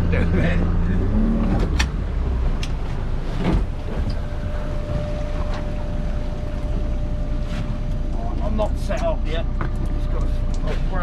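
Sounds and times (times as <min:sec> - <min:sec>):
boat engine running: 0:00.0 - 0:11.0
water noise: 0:00.0 - 0:11.0
wind: 0:00.0 - 0:11.0
faint steady whine: 0:03.1 - 0:11.0.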